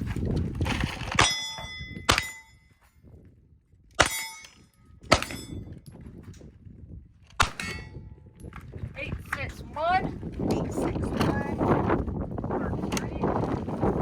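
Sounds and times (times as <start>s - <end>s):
steel target plate clanging: 1.1s - 2.6s, 4.0s - 5.7s, 7.4s - 8.0s
pistol shots: 4.0s - 4.5s, 5.1s - 5.6s, 7.4s - 7.8s.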